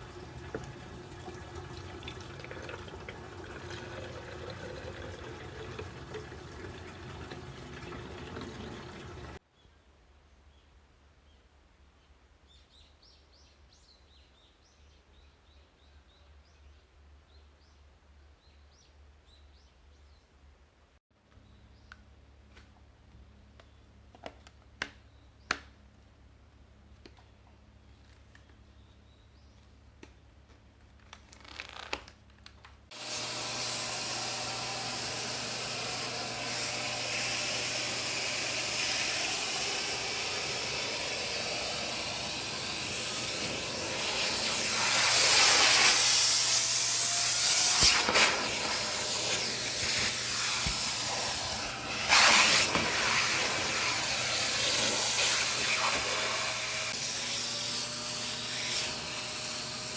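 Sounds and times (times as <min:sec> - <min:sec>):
vacuum cleaner running: 0:32.9 - 0:59.9.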